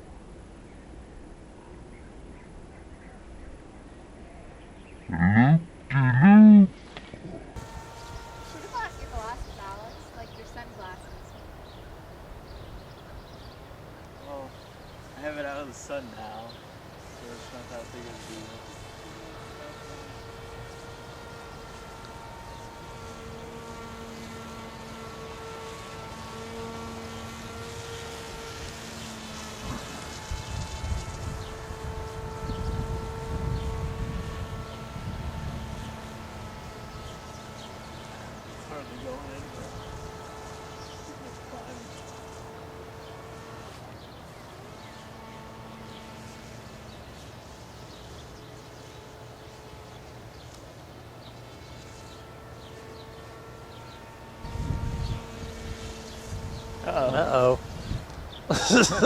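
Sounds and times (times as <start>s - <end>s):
model airplane motor whining: 6.4s - 59.0s
small birds chirping: 6.7s - 59.0s
wind noise rumbling: 28.2s - 38.5s, 54.4s - 58.5s.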